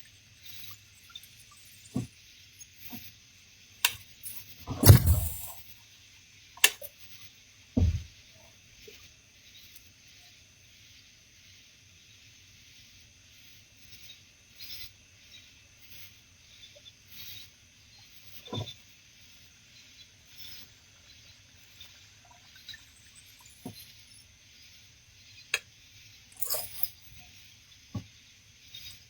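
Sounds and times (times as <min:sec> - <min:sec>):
insects chirping at night: 0:00.0 - 0:03.8, 0:18.8 - 0:29.0
sharp click: 0:03.8 - 0:05.6
low knocks: 0:07.8 - 0:08.1.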